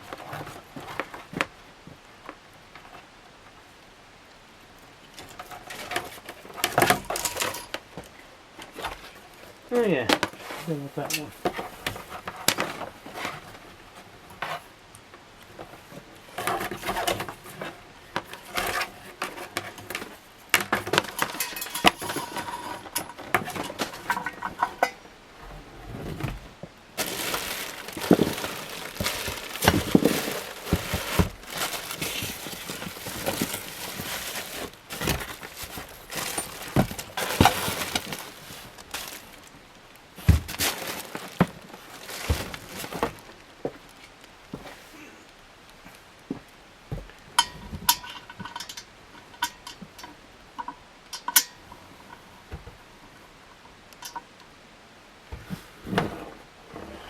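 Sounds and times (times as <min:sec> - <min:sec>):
rustling: 0:04.7 - 0:46.2
metal parts clinking: 0:21.0 - 0:24.9.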